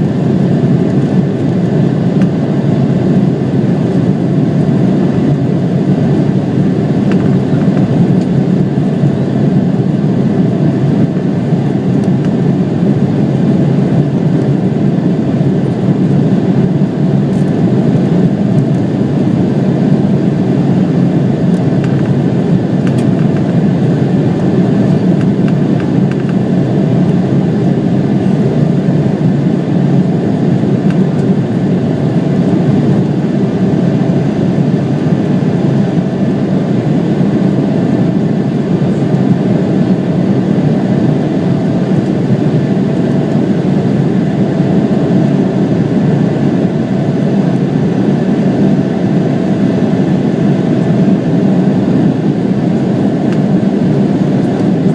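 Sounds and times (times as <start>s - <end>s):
jet engines low rush: 0.0s - 54.9s.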